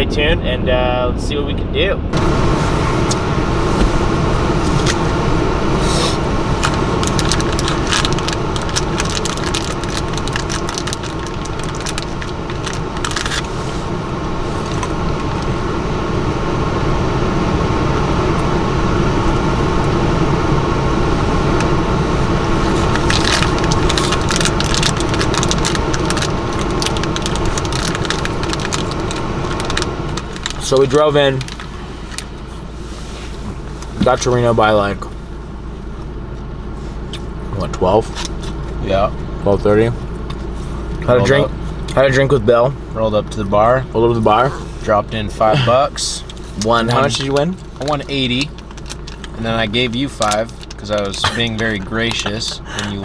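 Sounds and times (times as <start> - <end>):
car road and engine noise: 0.0 - 53.0
clicks and crackles: 6.6 - 13.6, 22.6 - 32.3, 46.2 - 53.0.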